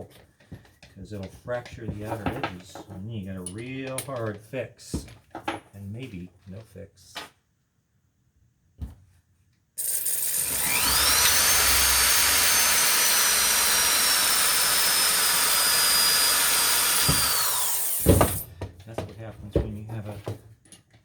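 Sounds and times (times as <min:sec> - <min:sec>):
electric drill whining: 0:09.8 - 0:18.5.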